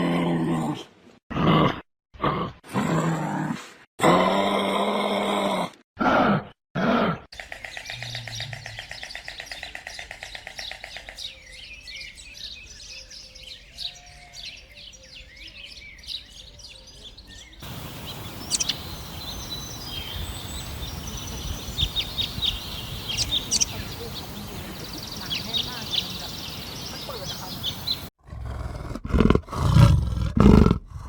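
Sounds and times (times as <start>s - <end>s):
small birds chirping: 7.4s - 28.1s
fast pulsing bird trill: 17.6s - 28.1s
steady hiss: 17.6s - 28.1s.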